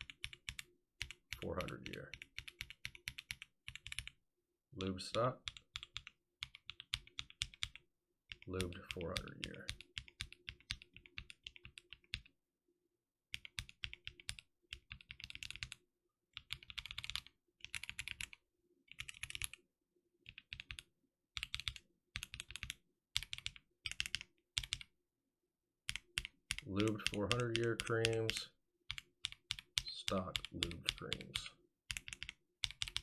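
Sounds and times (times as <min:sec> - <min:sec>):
mechanical keyboard keystrokes: 0:31.9 - 0:33.0.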